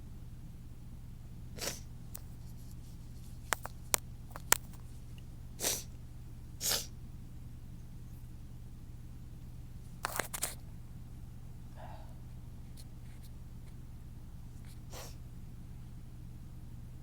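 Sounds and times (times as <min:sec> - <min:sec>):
steady low hum: 0:00.0 - 0:17.0
person breathing in sharply: 0:11.8 - 0:12.2.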